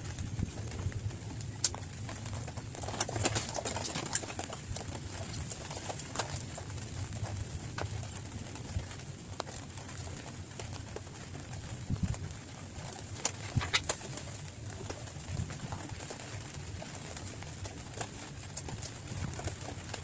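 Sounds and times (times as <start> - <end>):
rain drops tapping on hard surface: 0.0 - 20.0
steady low rumble: 0.0 - 20.0.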